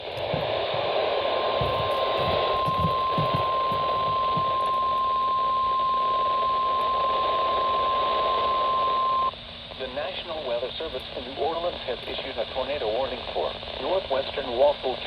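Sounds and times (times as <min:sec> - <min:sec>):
low crackles: 0:00.0 - 0:15.0
radio static hiss: 0:00.0 - 0:15.0
alarm tone: 0:01.6 - 0:09.3.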